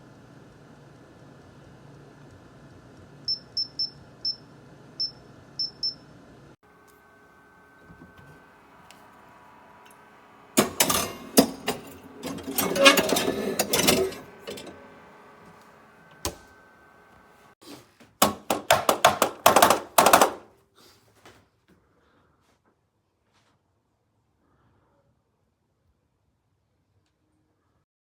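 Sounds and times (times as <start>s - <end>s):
handling clicks and knocks: 18.2s - 20.4s.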